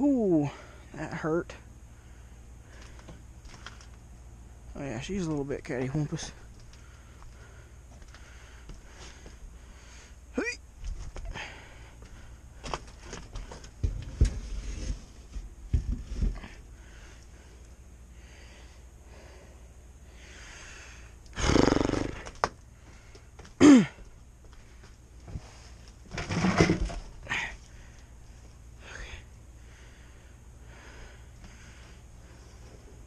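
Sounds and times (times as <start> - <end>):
man breathing heavily: 0.3 - 1.0, 1.6 - 3.5, 6.3 - 10.3, 11.2 - 14.4, 15.9 - 25.8, 27.2 - 33.0
man groaning: 23.6 - 24.0.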